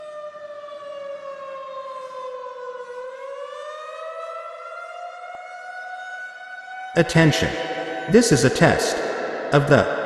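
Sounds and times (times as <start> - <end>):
electronic warning siren: 0.0 - 6.2.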